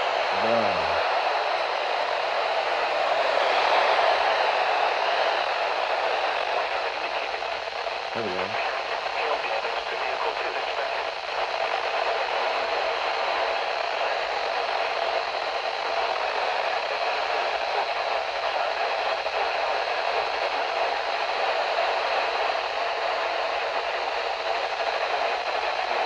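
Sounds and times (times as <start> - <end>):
radio static hiss: 0.0 - 4.3, 4.9 - 18.1.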